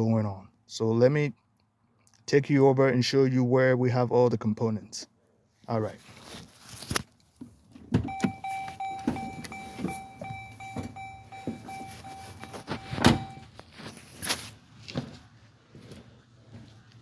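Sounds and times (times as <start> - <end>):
car door click: 8.0 - 13.4
car warning chime pulses: 8.0 - 13.6.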